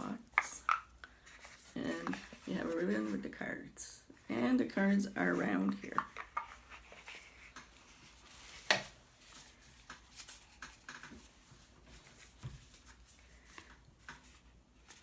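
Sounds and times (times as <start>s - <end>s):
cards rustling: 0.1s - 3.2s.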